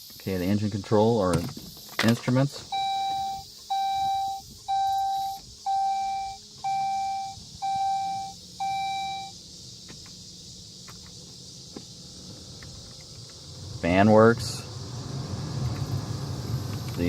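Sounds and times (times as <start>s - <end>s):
faint steady hum: 0.0s - 17.0s
dashboard warning chime: 2.7s - 9.4s.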